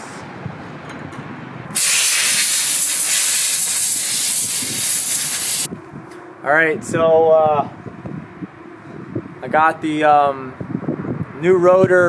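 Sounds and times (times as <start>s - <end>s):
spray nozzle hissing: 1.8s - 5.7s.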